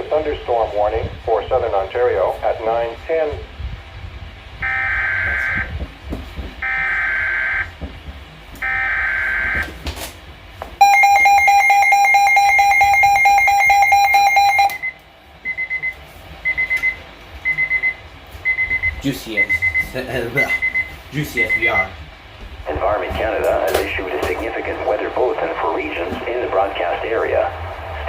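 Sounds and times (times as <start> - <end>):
data bursts: 10.8 - 14.9
steady alert tone: 10.8 - 14.9
short faint beeps: 10.8 - 21.9.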